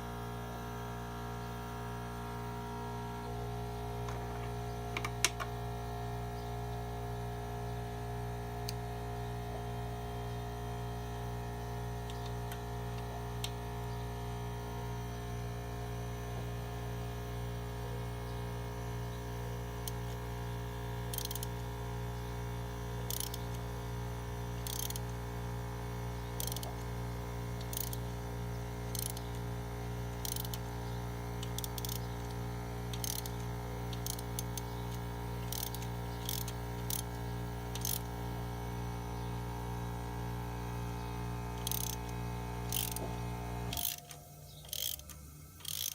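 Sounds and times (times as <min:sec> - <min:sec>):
steady electrical hum: 0:00.0 - 0:45.9
metallic ratcheting rasps: 0:21.1 - 0:21.5, 0:23.1 - 0:23.6, 0:24.6 - 0:25.1, 0:26.4 - 0:26.7, 0:27.6 - 0:28.0, 0:28.9 - 0:29.3, 0:30.2 - 0:30.7, 0:31.4 - 0:38.1, 0:41.6 - 0:42.1, 0:42.7 - 0:43.0, 0:43.7 - 0:45.9.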